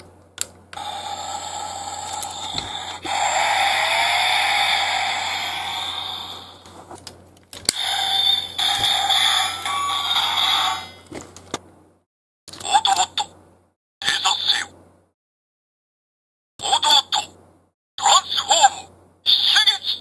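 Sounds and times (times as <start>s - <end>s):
toy electronic sound effects: 0.8s - 6.6s, 7.7s - 11.0s.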